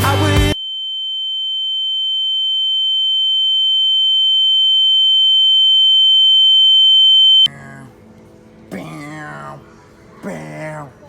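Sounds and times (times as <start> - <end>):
high-pitched electronic beep: 0.6 - 7.5.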